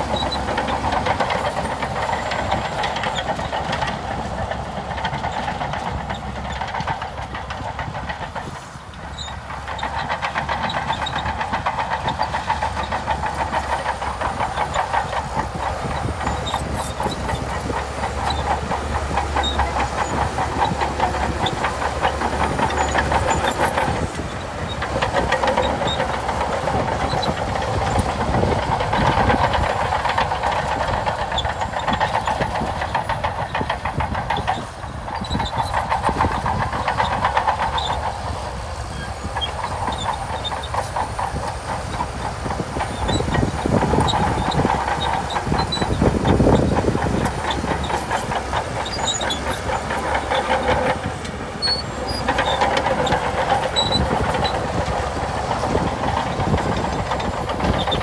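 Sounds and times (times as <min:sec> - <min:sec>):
bulldozer engine running: 0:00.0 - 0:58.0
steel tracks clattering: 0:00.0 - 0:58.0.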